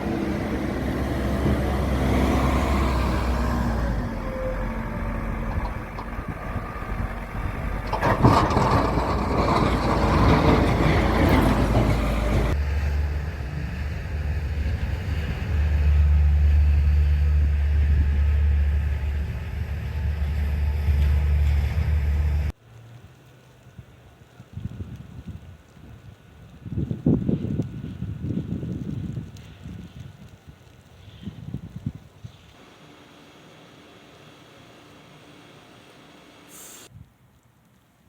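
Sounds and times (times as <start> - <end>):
vehicle engines droning: 0.0 - 23.0
road and wind noise: 0.0 - 32.7.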